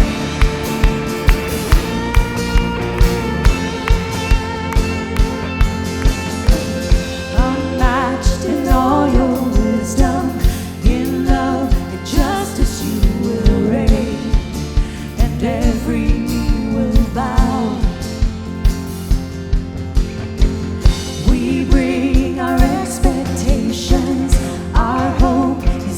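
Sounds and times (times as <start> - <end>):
kick drum beat: 0.0 - 8.0
band playing a song: 0.0 - 15.5
person singing: 6.6 - 18.0, 21.2 - 25.9.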